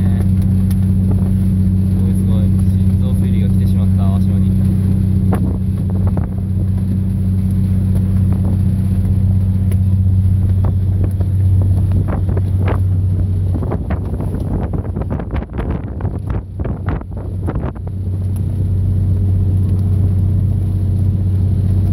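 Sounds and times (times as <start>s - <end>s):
boat engine humming: 0.0s - 21.9s
wind buffeting microphone: 0.0s - 21.9s.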